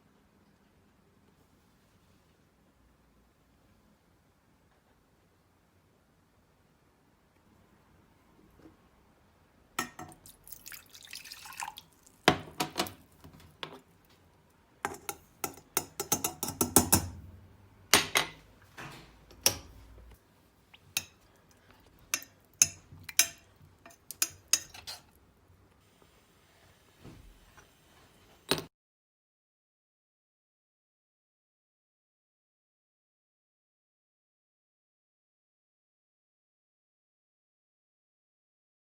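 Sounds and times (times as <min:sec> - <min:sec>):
spoon clinking against cup: 0:09.8 - 0:10.2, 0:14.9 - 0:17.1
liquid pouring: 0:09.8 - 0:13.1.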